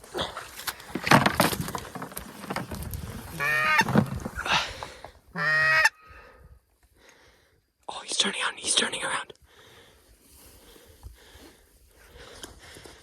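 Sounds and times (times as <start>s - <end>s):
water sloshing from wading: 0.0s - 5.2s
goose honks: 3.4s - 3.9s, 5.4s - 6.0s.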